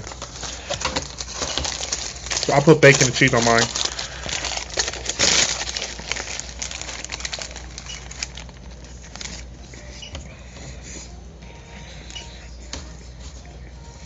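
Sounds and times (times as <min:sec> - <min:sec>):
paper wrapper crinkling: 0:00.0 - 0:10.0.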